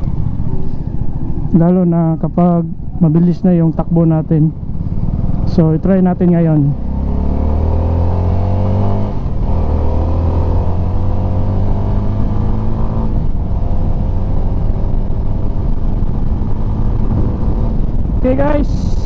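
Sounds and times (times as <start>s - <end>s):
wind rumble on microphone: 0.0s - 19.0s
motorcycle engine revving: 3.9s - 19.0s.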